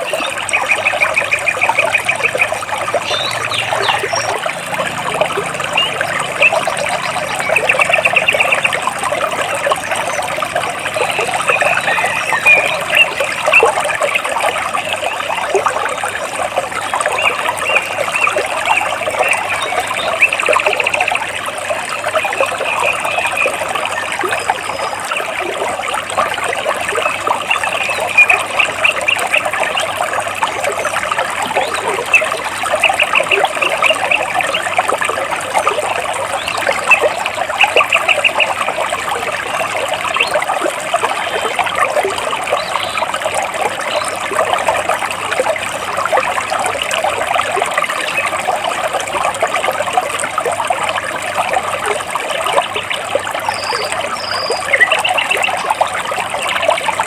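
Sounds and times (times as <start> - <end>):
stream flowing over rocks: 0.0 - 57.0
bird singing rapid trills: 0.1 - 4.4, 5.0 - 8.8, 9.5 - 14.2, 53.4 - 55.6.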